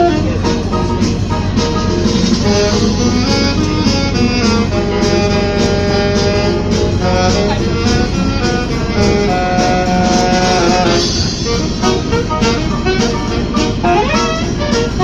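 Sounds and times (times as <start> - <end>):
saxophone playing jazzy melody: 0.0 - 0.6, 1.8 - 15.0
chordal accompaniment: 0.0 - 15.0
train wheels rumbling: 0.0 - 15.0.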